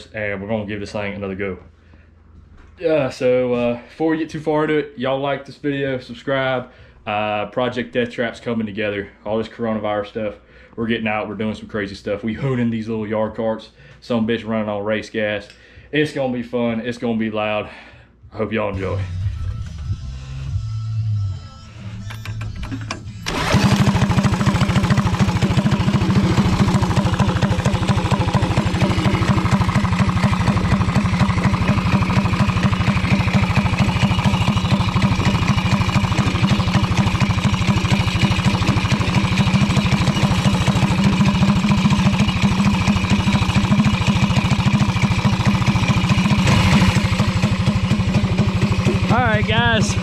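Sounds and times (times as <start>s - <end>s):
go-kart engine running: 23.2s - 50.0s.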